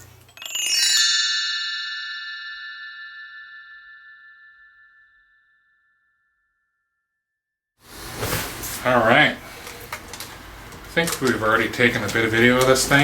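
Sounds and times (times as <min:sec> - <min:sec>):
struck chime ringing: 0:00.0 - 0:06.9
low room noise: 0:07.8 - 0:13.0.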